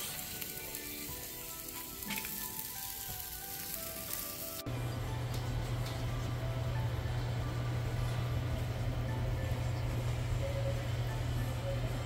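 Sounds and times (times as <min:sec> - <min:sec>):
chicken skin sizzling on a grill: 0:00.0 - 0:06.9
steady low hum: 0:04.7 - 0:12.0.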